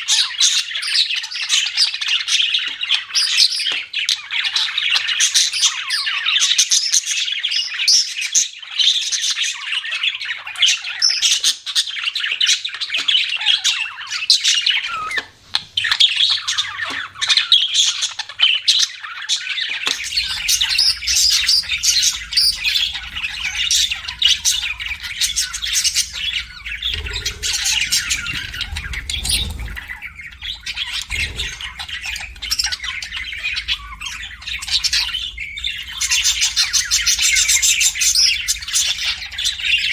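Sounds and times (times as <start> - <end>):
budgerigars chirping: 19.9 - 39.9
low rumble: 20.0 - 39.9.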